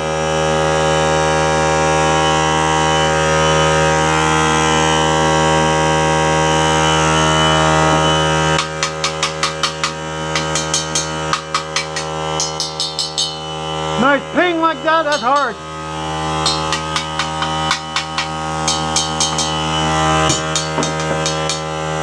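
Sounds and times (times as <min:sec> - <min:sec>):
air compressor running: 0:00.0 - 0:22.0
metallic pings on steel tank: 0:08.5 - 0:14.0, 0:14.8 - 0:22.0.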